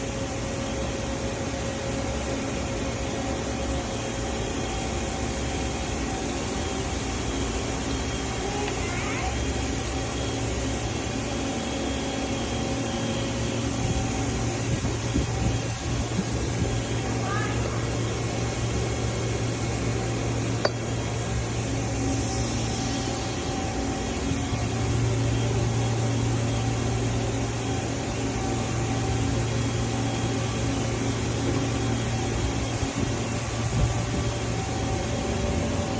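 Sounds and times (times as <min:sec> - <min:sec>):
lathe mechanical hum and hiss: 0:00.0 - 0:35.9.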